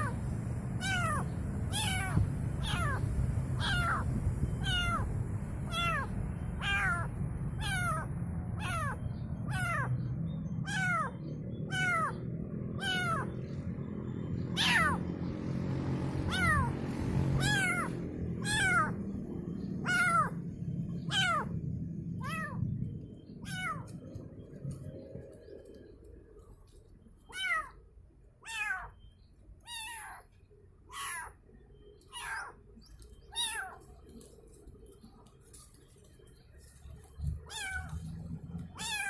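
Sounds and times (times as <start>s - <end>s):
steady low rumble: 0.0s - 39.0s
kitten mewing: 0.8s - 3.0s, 3.6s - 5.1s, 5.7s - 9.9s, 10.7s - 12.1s, 12.8s - 13.3s, 14.6s - 15.0s, 16.3s - 16.7s, 17.4s - 19.0s, 19.8s - 20.4s, 21.1s - 21.6s, 22.2s - 22.6s, 23.4s - 24.0s, 27.3s - 27.8s, 28.5s - 29.0s, 29.7s - 30.3s, 30.9s - 31.4s, 32.1s - 32.6s, 37.5s - 38.0s, 38.8s - 39.0s.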